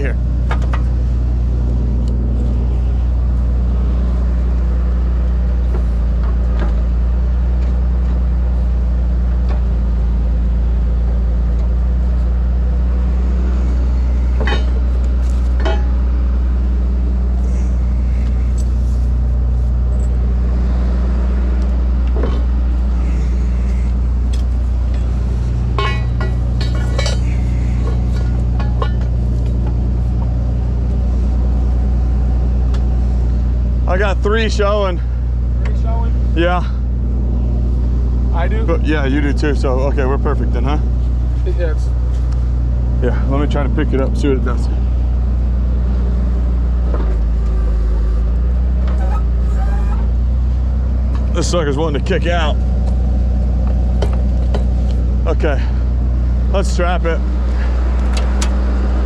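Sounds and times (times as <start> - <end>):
truck engine idling: 0.0 - 59.0
metal chains clinking: 24.3 - 29.6.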